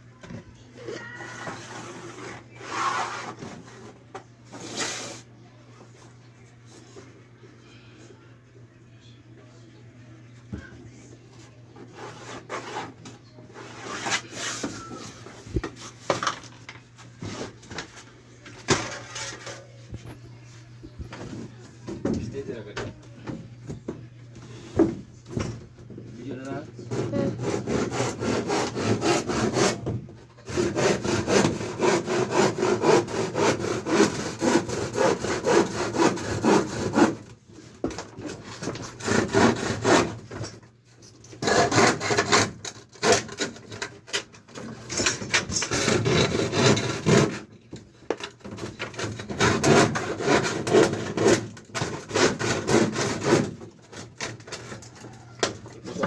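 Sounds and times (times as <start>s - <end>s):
hand saw cutting wood: 26.8s - 37.3s, 38.4s - 40.5s, 41.4s - 47.5s, 48.4s - 54.8s.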